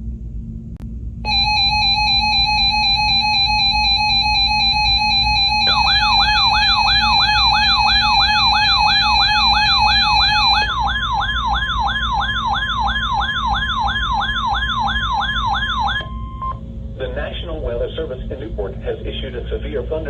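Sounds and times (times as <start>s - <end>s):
second steady tone: 1.2s - 11.0s
steady alert tone: 1.3s - 16.1s
warbling siren-like sweep: 1.3s - 16.1s.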